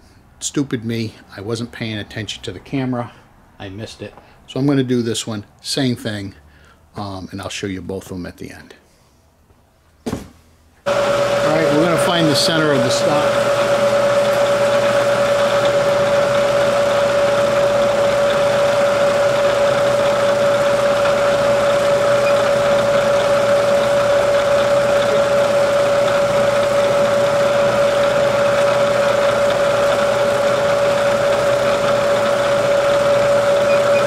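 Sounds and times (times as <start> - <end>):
milling machine whining: 10.9 - 34.0.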